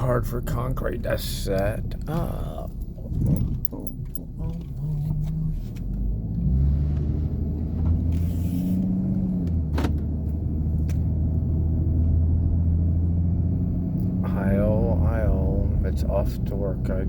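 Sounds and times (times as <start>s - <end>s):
vehicle engine rumbling: 0.0s - 17.0s.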